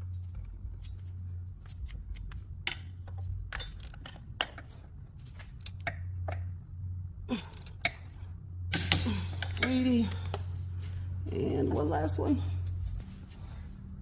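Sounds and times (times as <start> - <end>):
low hum: 0.0 - 14.0.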